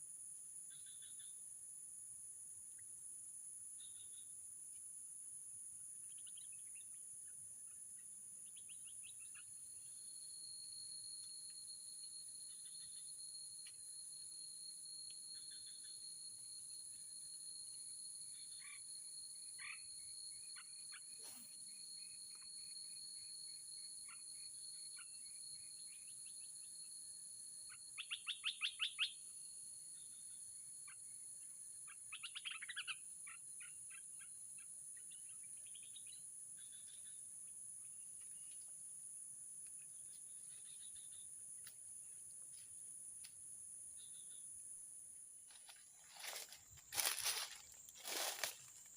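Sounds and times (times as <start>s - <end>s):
high-pitched insect drone: 45.6s - 48.9s.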